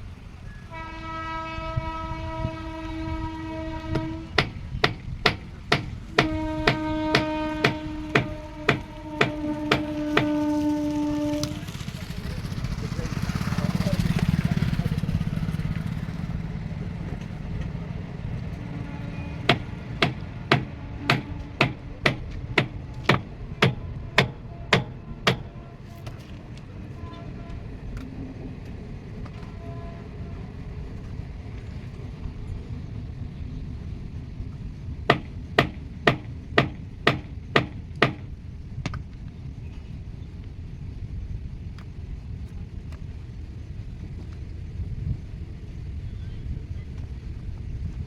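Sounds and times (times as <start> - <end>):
sharp evenly spaced knocks: 4.4 - 10.3, 19.4 - 25.6, 35.1 - 39.0
heavy machine engine running: 11.3 - 29.9.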